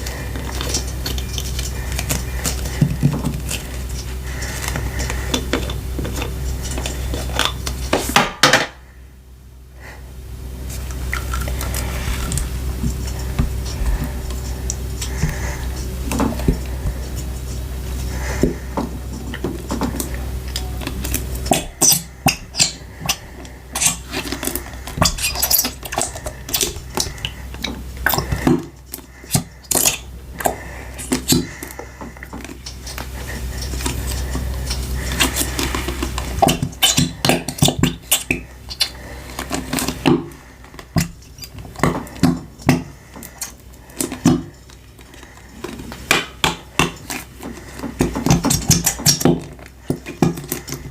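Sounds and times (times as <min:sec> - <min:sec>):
low steady hum: 0:00.0 - 0:50.9
slime making sticky pops: 0:19.3 - 0:50.9.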